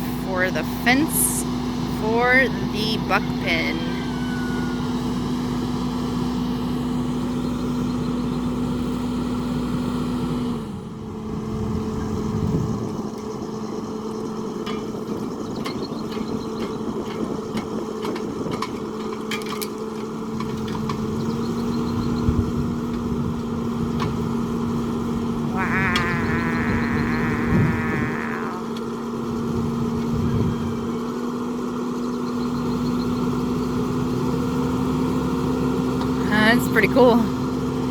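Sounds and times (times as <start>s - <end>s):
engine running: 0.0s - 37.9s.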